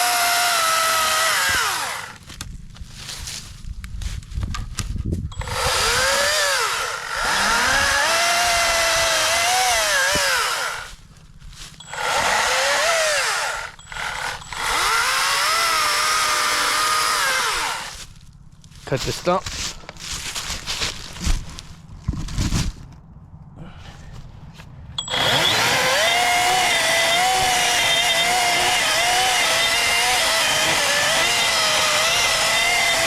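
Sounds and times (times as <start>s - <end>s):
chainsaw cutting wood: 0.0s - 2.4s, 5.4s - 11.0s, 11.8s - 18.0s, 25.0s - 33.0s.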